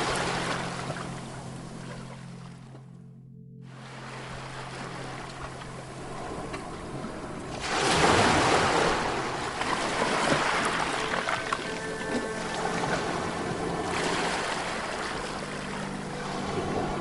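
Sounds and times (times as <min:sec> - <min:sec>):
surf washing on beach: 0:03.8 - 0:17.0
wave breaking loudly: 0:07.5 - 0:17.0.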